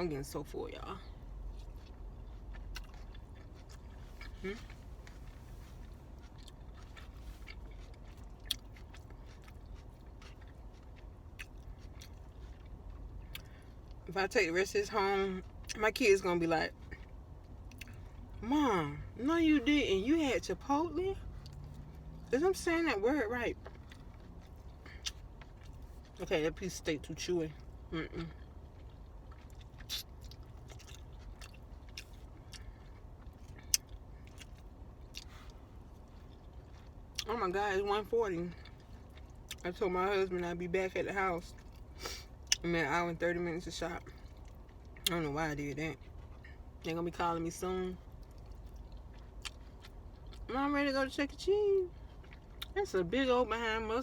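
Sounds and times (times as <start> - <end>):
person chewing food: 0.9 - 14.0, 15.4 - 15.8, 16.7 - 18.4, 20.8 - 22.4, 23.5 - 26.6, 27.5 - 37.3, 38.0 - 39.6, 41.4 - 42.6, 44.0 - 45.2, 46.0 - 46.8, 48.0 - 50.5, 51.9 - 52.8.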